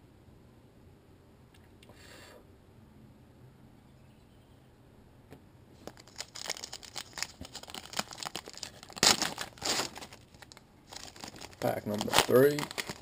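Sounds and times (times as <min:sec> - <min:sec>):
wrapper crinkling: 0:05.8 - 0:13.0.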